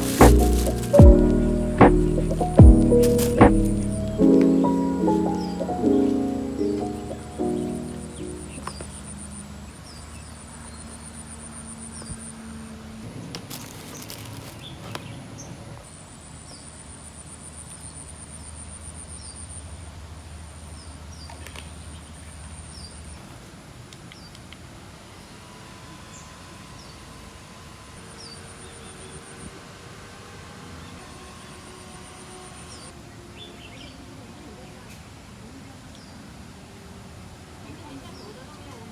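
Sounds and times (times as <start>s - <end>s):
insects buzzing: 0.0s - 9.8s.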